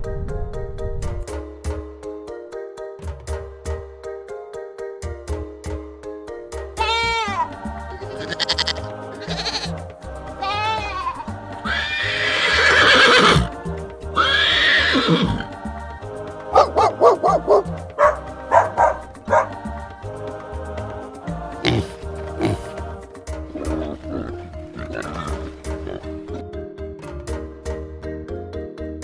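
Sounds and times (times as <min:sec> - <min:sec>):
cheerful background music: 0:00.0 - 0:29.0
animal calls: 0:08.0 - 0:09.7.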